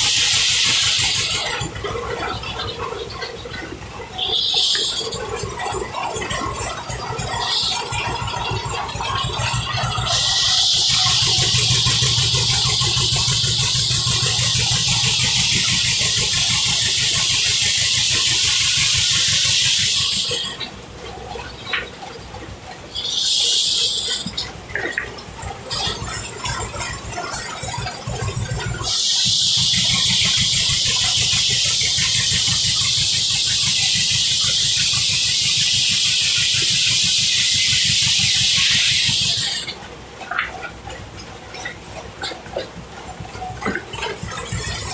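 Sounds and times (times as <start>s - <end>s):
sawmill blade cutting log: 0.0s - 2.4s, 4.2s - 20.7s, 22.9s - 24.5s, 25.8s - 39.8s
two-cylinder engine putting: 0.0s - 44.9s.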